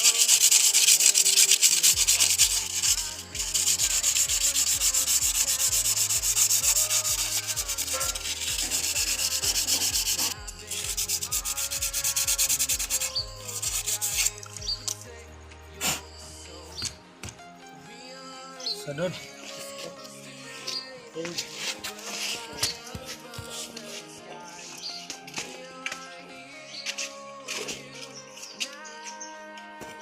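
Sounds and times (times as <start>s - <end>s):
brake rotor scraped by hand: 0.0s - 15.0s.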